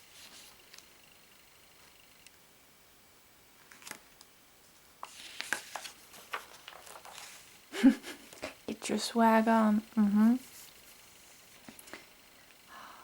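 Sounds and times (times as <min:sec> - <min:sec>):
magazine pages rustling: 0:03.7 - 0:04.1, 0:05.0 - 0:07.6.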